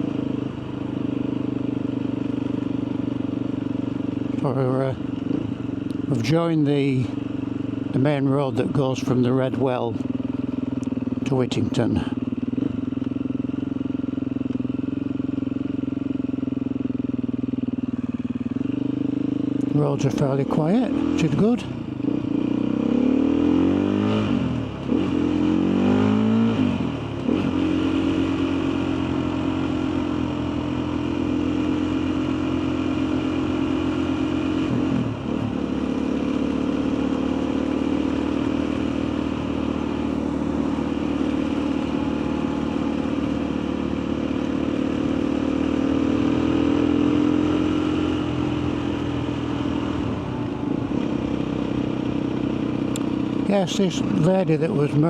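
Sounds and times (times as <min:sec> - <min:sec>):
motorcycle engine accelerating: 0:00.0 - 0:55.0.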